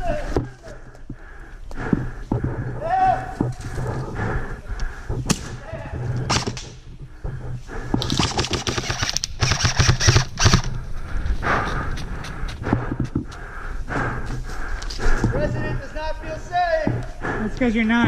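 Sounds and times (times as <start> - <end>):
airsoft guns firing: 6.3 - 6.8, 8.0 - 10.7.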